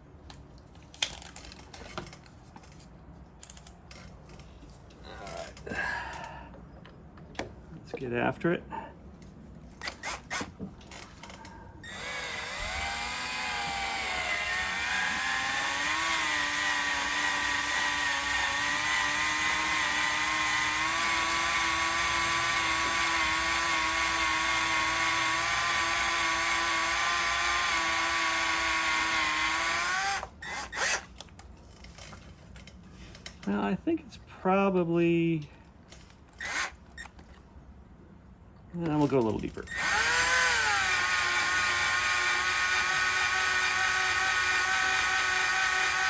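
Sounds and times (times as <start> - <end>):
power drill motor running: 9.8 - 10.5, 11.8 - 31.1, 36.4 - 37.1, 39.7 - 46.0.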